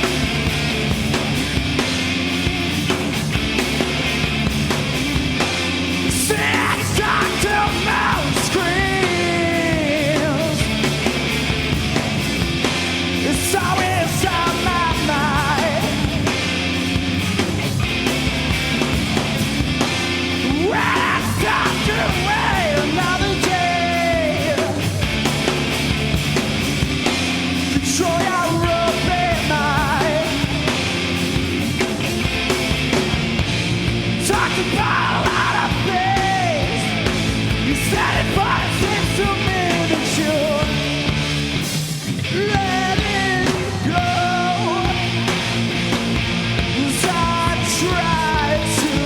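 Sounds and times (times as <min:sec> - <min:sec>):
punk rock band playing: 0:00.0 - 0:49.0
person yelling vocals: 0:06.1 - 0:10.5, 0:20.4 - 0:24.8, 0:34.3 - 0:37.0, 0:37.7 - 0:40.6.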